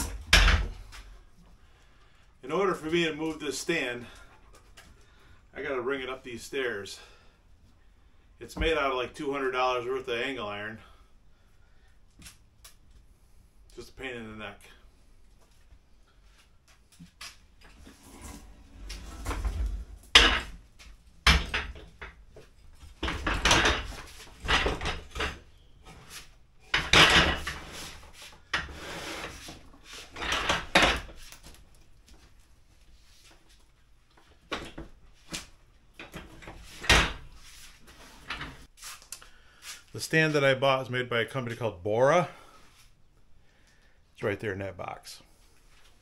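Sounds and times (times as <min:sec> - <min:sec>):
metal frame scraping and dragging: 0:17.7 - 0:20.5.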